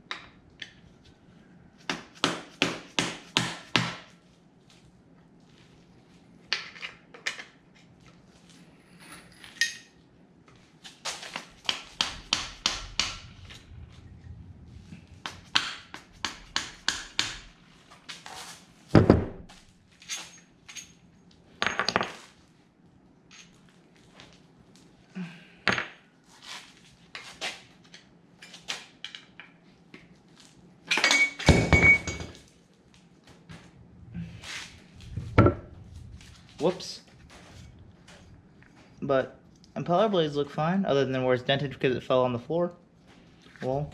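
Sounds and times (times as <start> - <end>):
metal tools clinking and knocking: 9.0 - 10.0, 20.0 - 21.0, 23.3 - 23.6, 30.9 - 32.4
metal clattering and ringing: 30.9 - 32.4.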